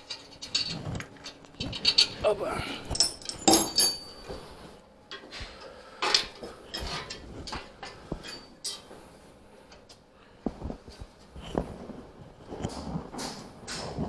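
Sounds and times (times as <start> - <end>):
metal clanks and clinks: 0.0 - 4.5, 6.0 - 8.9.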